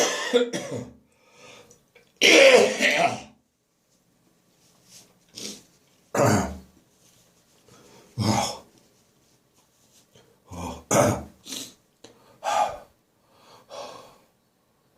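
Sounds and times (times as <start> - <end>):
man coughing and gagging: 0.0 - 1.0, 2.2 - 3.3, 6.2 - 6.6, 10.8 - 11.4.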